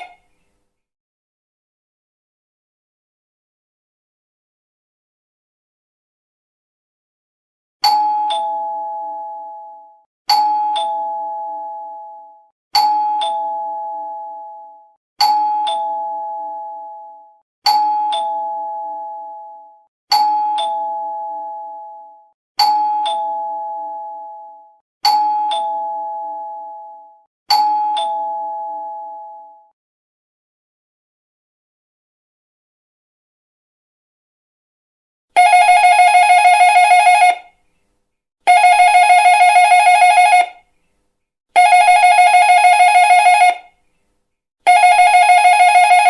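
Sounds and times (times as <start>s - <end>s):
two-tone doorbell chime: 7.8s - 29.7s.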